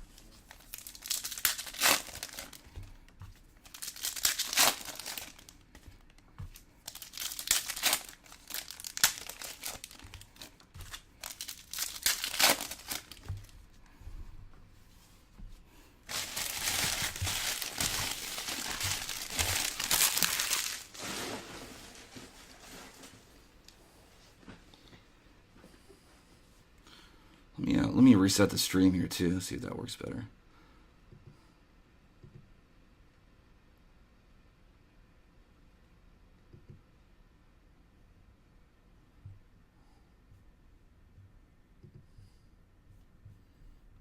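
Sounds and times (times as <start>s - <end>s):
wrappers crinkling and tearing: 0.1s - 2.9s, 3.6s - 13.5s, 16.1s - 23.8s.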